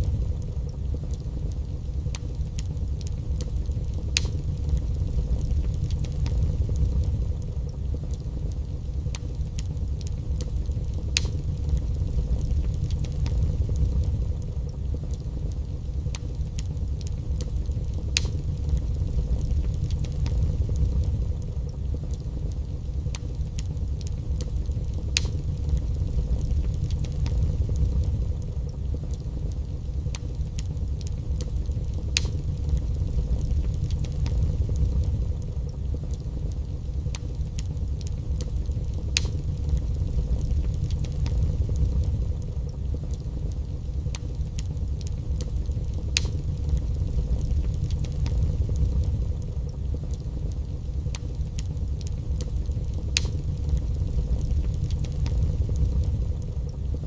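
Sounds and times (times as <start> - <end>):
fire low rumble: 0.0 - 57.0
logs crackling and popping: 0.0 - 57.0.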